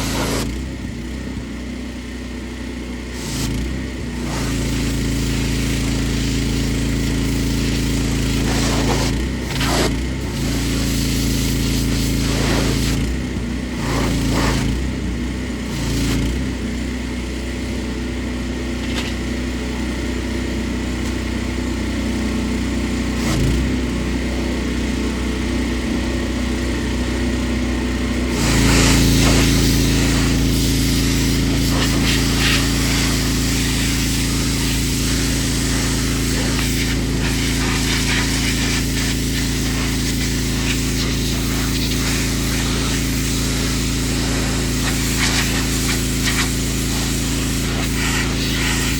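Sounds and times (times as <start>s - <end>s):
water spraying hiss: 0.0s - 0.4s, 3.2s - 3.5s, 4.2s - 13.0s, 28.2s - 48.9s
pressure washer motor hum: 0.0s - 48.9s.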